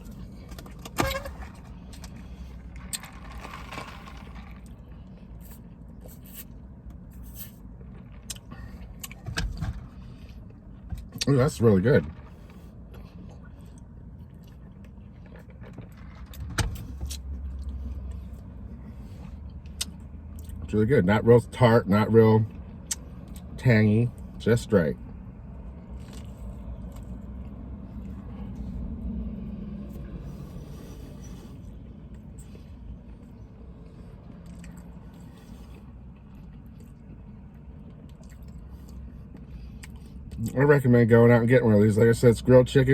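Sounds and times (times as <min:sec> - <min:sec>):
vehicle rumbling: 0:00.0 - 0:42.9
person chewing food: 0:12.4 - 0:15.9, 0:25.8 - 0:28.7, 0:34.3 - 0:40.3.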